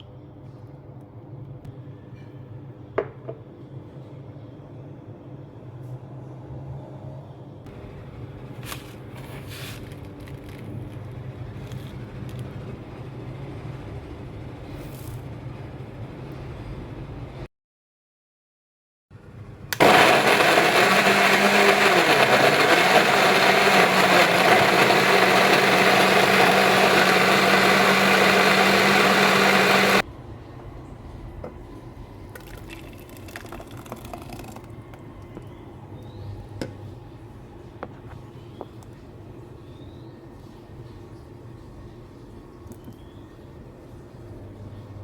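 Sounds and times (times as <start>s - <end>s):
kitchen blender running: 19.7s - 30.0s.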